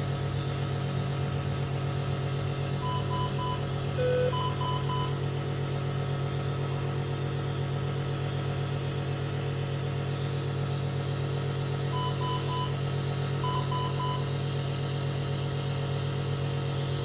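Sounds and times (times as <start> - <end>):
compressor motor hum: 0.0 - 17.0
short electronic beeps: 2.8 - 5.2, 11.9 - 12.8, 13.4 - 14.4.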